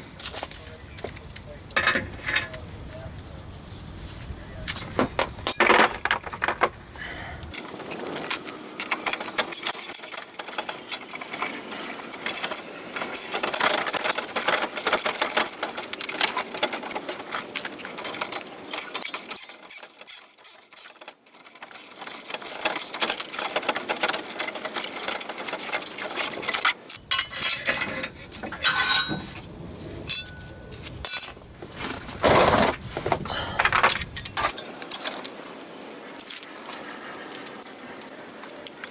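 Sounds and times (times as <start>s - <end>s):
clinks of metal sockets: 1.8s - 2.6s, 4.7s - 6.6s, 26.5s - 29.5s, 30.1s - 31.6s, 33.6s - 35.4s.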